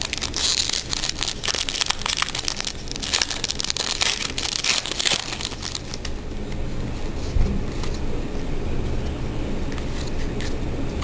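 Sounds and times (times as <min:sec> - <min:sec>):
card packs crinkling and rustling: 0:00.0 - 0:06.2.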